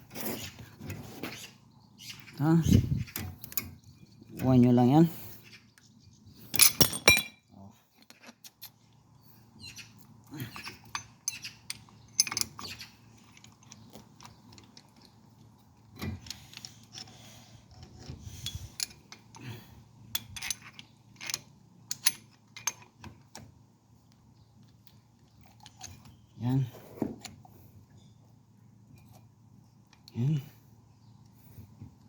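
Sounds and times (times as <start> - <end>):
metal clicks and clinks: 10.8 - 15.1, 20.1 - 22.9.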